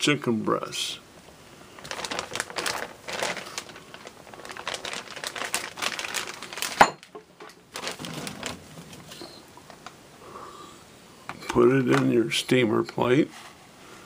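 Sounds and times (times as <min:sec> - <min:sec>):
plastic packaging crinkling: 0:01.7 - 0:10.0.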